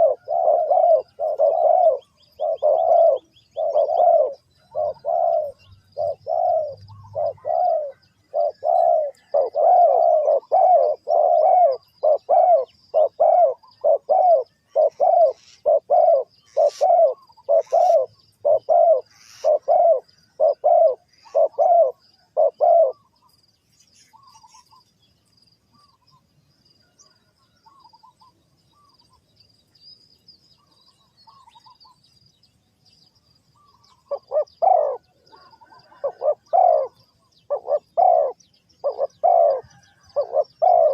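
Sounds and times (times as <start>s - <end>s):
dove cooing: 0.0s - 23.4s, 33.6s - 40.9s.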